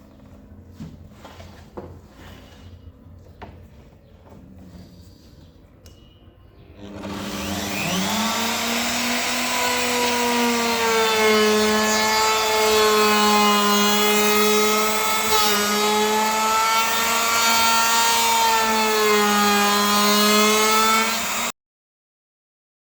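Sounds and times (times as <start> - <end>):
power tool motor whine: 6.8 - 21.5.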